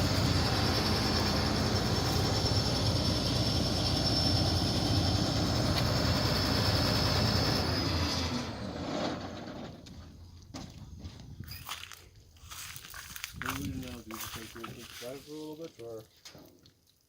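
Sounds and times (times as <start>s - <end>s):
combine harvester running: 0.0s - 10.2s.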